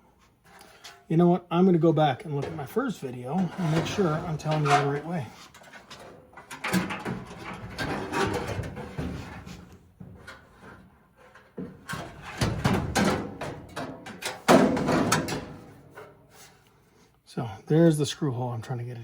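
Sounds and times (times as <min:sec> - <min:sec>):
sheet metal knocking and scraping: 0:02.2 - 0:16.4.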